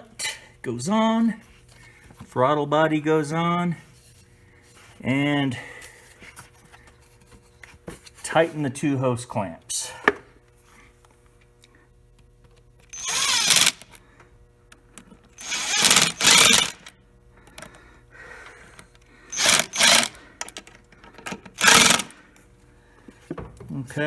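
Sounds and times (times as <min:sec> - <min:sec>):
cordless power driver bursts: 0:12.9 - 0:14.0, 0:15.4 - 0:17.7, 0:19.3 - 0:20.7, 0:21.4 - 0:22.2.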